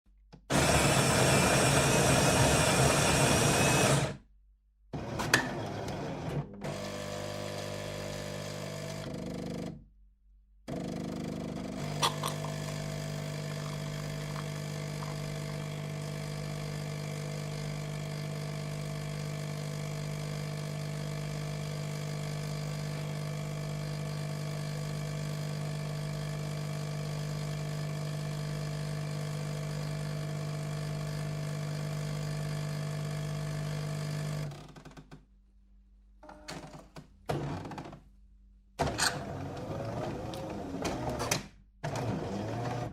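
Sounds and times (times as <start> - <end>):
coffee machine motor hum: 0.5 - 4.2, 6.0 - 9.4, 10.7 - 34.6, 38.8 - 42.9
coffee grinder grinding beans: 6.7 - 9.0, 11.7 - 18.4.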